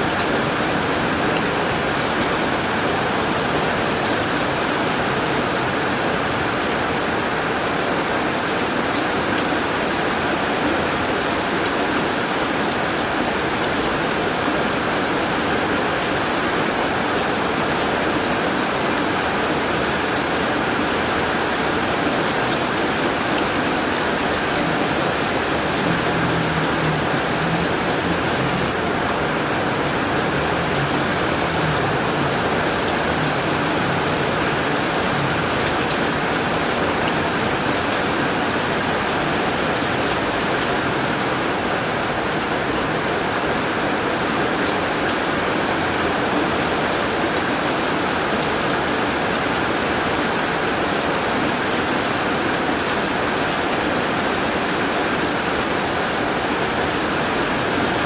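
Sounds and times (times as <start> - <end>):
heavy rain on a tin roof: 0.0 - 58.0.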